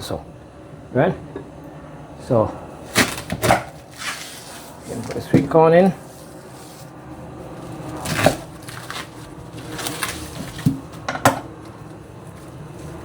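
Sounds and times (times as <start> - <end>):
dishes and utensils clinking: 11.0 - 11.5.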